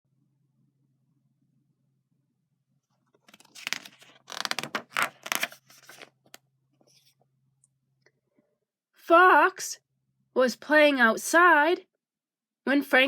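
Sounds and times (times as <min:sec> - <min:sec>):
paper rustling and scraping: 0:03.2 - 0:07.1.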